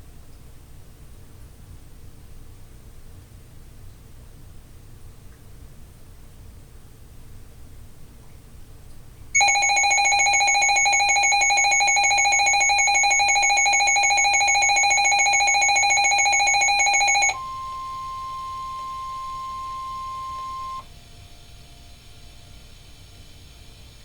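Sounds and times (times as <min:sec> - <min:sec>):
pulsing electronic alarm tone: 0:09.4 - 0:20.8
steady single alarm tone: 0:09.4 - 0:20.9.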